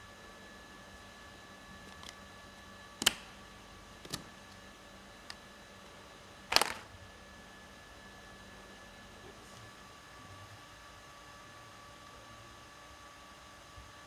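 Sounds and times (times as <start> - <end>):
faint steady hum: 0.0 - 14.0
tools and parts clicking: 6.5 - 6.9.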